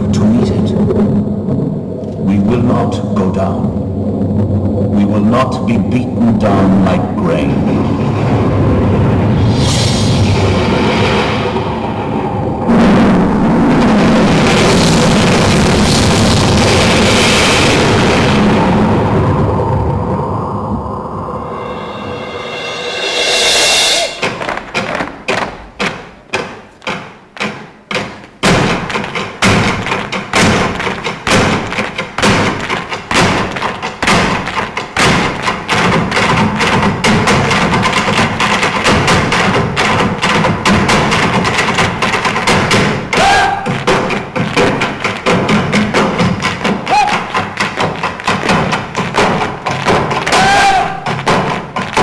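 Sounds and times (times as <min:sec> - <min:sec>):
rhythmic clatter of dancing feet: 0:24.2 - 0:52.0
hard shoes stamping on stage: 0:24.3 - 0:52.0.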